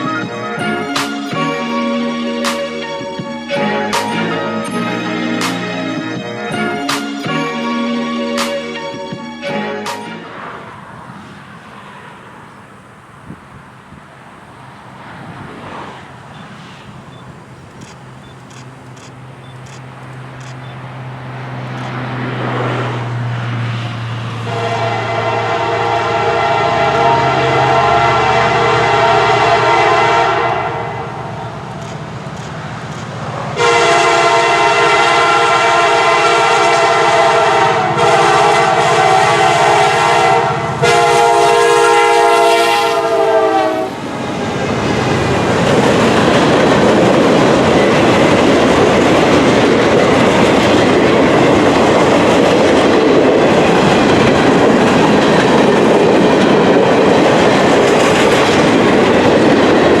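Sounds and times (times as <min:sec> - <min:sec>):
train wheels clattering on rails: 0:16.3 - 0:22.7, 0:30.5 - 0:34.9, 0:43.8 - 1:00.0
locomotive air horn blasts: 0:24.4 - 0:31.8, 0:33.6 - 0:44.1.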